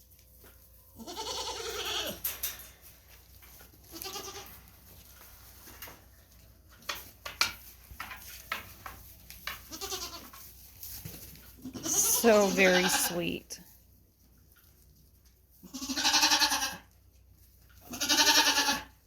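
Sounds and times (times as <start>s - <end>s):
goats bleating: 1.0s - 2.2s, 3.9s - 4.6s, 9.7s - 10.2s, 11.7s - 13.2s, 15.6s - 16.8s, 17.9s - 18.9s
rustling: 2.4s - 15.6s.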